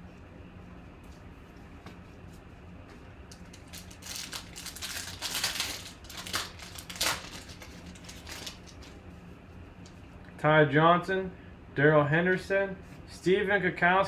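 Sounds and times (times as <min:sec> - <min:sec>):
wrapper crinkling and tearing: 0:03.3 - 0:09.0.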